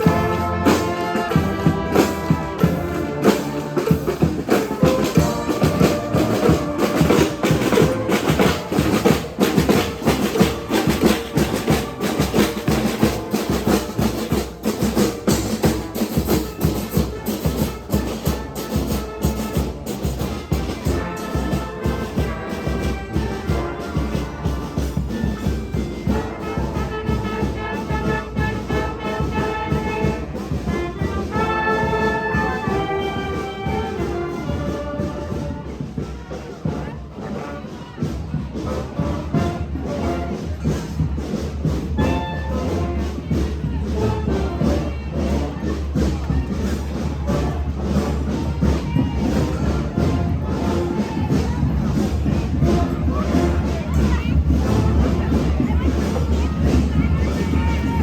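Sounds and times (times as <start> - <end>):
rapid drumming: 0.0 - 27.6, 39.7 - 58.0
brass horns melody: 0.0 - 35.8, 38.6 - 40.7, 41.7 - 45.7, 47.3 - 58.0.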